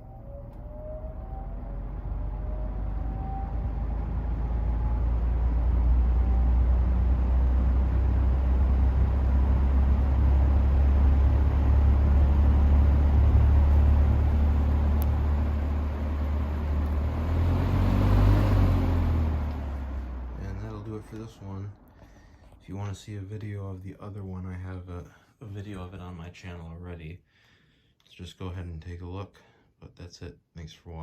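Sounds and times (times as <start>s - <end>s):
fan air rush: 0.0s - 22.6s
fan motor hum: 0.0s - 22.6s.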